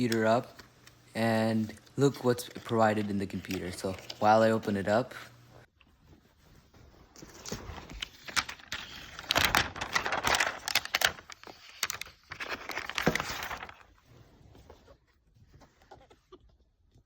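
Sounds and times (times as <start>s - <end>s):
packaging crinkling and rustling: 7.1s - 14.0s.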